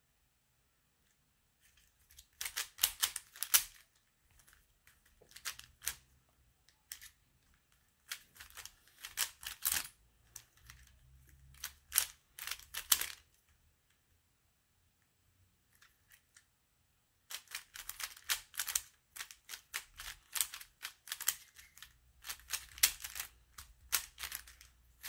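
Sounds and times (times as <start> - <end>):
puzzle cube layers clicking: 1.9 - 6.1, 6.8 - 13.3, 17.3 - 25.0.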